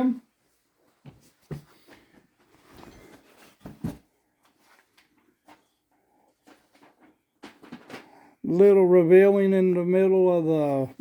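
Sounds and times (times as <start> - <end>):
fabric rustling: 0.4 - 8.2.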